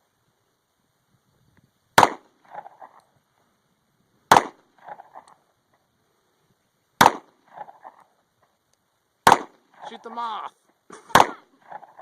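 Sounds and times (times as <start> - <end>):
handgun shots: 4.3 - 5.0, 7.0 - 7.3, 9.2 - 9.6, 11.1 - 11.5.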